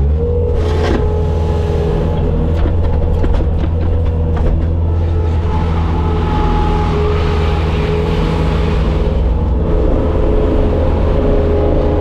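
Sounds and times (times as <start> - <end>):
diesel engine running at high revs: 0.0 - 12.0
knocks and rattles: 2.0 - 5.6.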